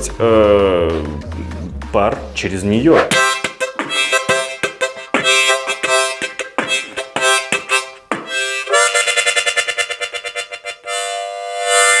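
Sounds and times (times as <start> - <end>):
harmonica playing rhythmic chords: 2.8 - 12.0.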